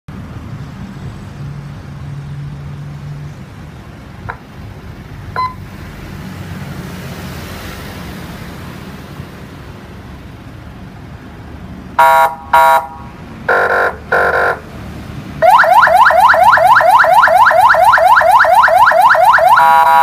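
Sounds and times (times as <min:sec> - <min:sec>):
short electronic beeps: 0:05.4 - 0:05.6.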